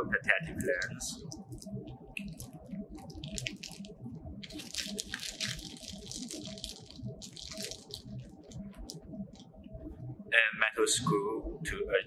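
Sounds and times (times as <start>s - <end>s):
plastic bag crinkling: 0.6s - 9.0s.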